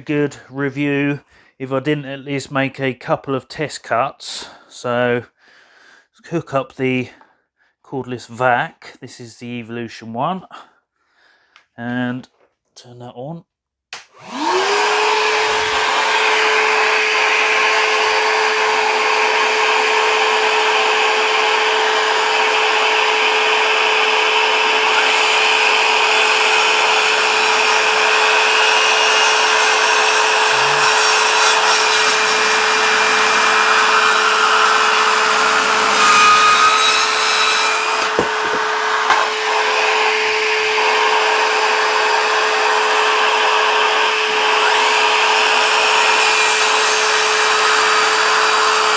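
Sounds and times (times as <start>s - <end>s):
circular saw cutting wood: 14.0s - 48.9s
vacuum running: 14.0s - 48.9s.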